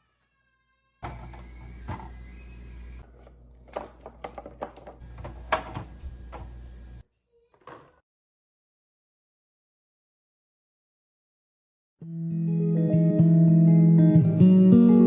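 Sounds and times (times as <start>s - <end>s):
household items clicking and knocking: 3.0s - 6.5s.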